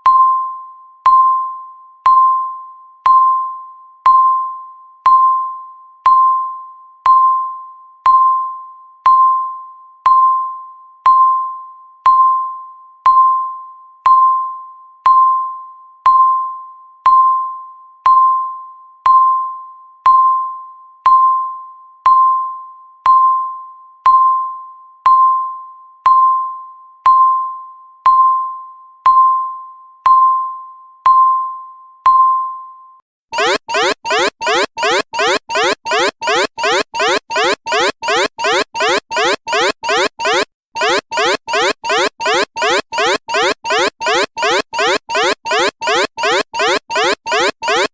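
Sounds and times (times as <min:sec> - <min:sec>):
countdown timer beeping: 0:33.4 - 0:47.9.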